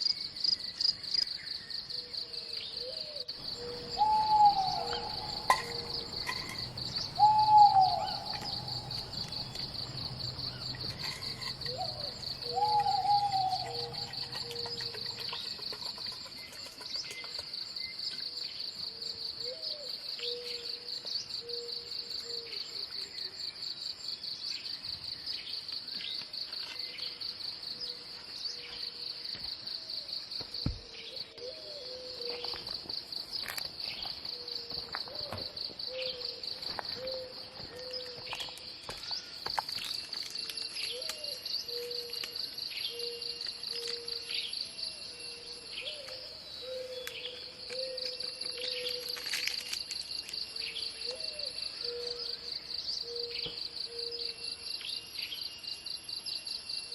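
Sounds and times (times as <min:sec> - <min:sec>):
bird chirps: 0:00.0 - 0:18.3, 0:33.3 - 0:49.3, 0:50.5 - 0:55.5
insects trilling: 0:00.0 - 0:56.9
low call: 0:03.4 - 0:15.2.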